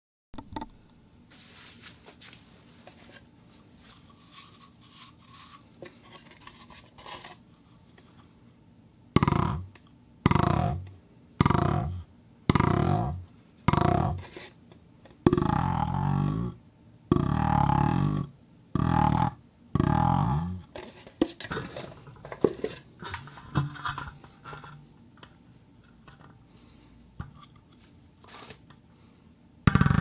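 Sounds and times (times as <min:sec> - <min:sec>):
plastic ball ticking on wooden box: 0:09.2 - 0:09.6, 0:15.3 - 0:15.8.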